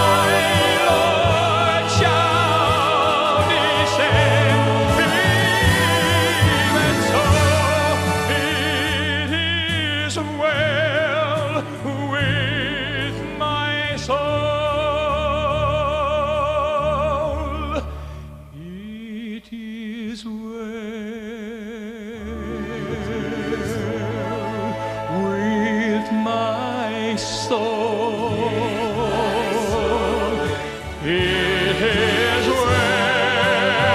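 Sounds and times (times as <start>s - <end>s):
gospel group singing: 0.0s - 13.7s, 22.2s - 33.9s
instrumental accompaniment: 0.0s - 15.4s, 22.2s - 33.9s.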